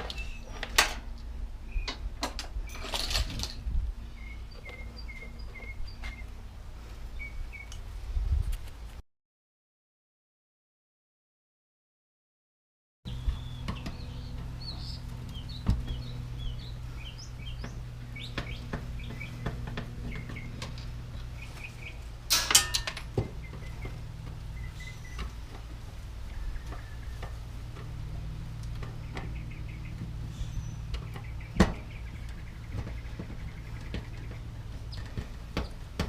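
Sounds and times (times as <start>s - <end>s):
birds chirping: 0.0s - 0.8s, 4.0s - 7.8s, 13.1s - 36.0s
steady low hum: 13.1s - 36.0s.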